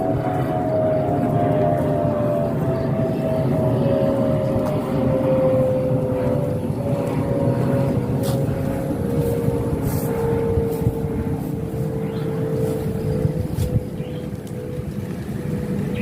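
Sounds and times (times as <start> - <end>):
motor engine running: 0.0 - 16.0.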